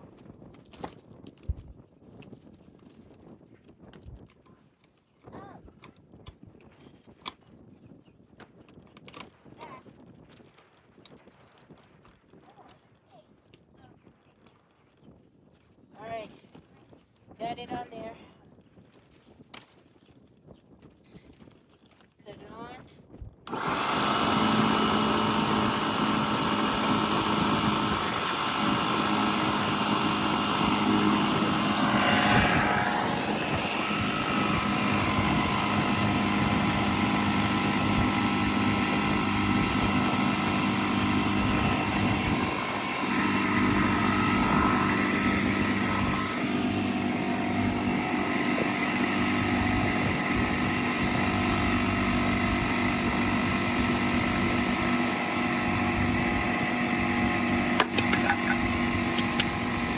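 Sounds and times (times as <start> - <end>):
air compressor running: 23.5 - 59.9.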